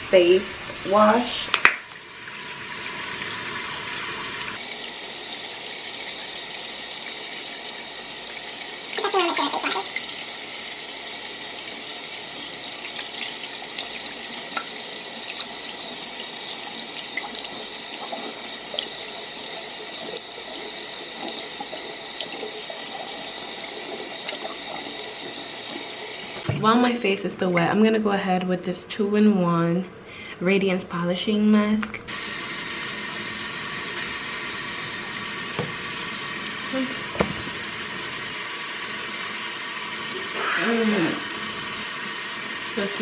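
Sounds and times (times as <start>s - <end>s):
sink tap running: 0.1s - 26.8s, 32.1s - 43.0s.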